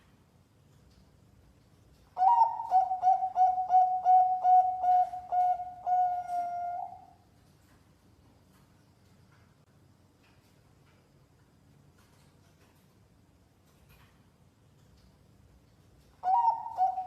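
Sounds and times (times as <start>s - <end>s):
dove cooing: 2.2s - 7.2s, 16.2s - 17.0s.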